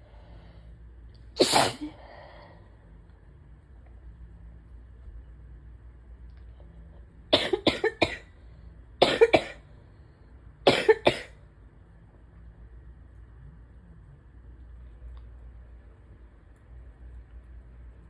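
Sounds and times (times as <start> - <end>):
person coughing: 7.4 - 8.2, 9.0 - 9.6, 10.7 - 11.4.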